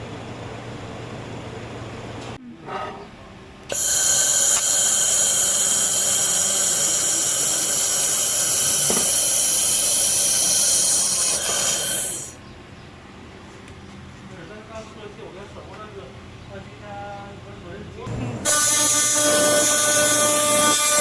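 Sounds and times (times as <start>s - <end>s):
laser welder gas hiss: 3.7s - 12.4s.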